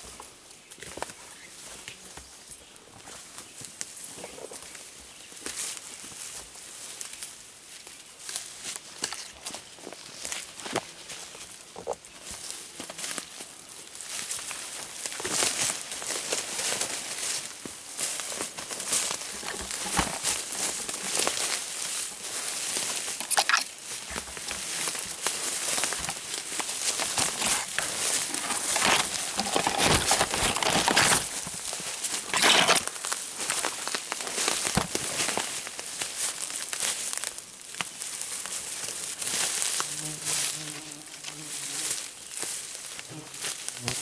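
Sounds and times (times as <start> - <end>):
footsteps on dry leaves: 15.3 - 40.5.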